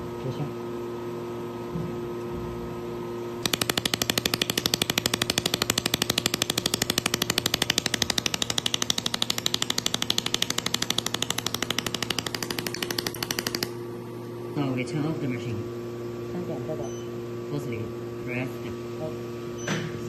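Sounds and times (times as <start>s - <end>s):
laser welder snapping pulses: 3.4s - 13.8s
machine hum: 3.4s - 18.0s.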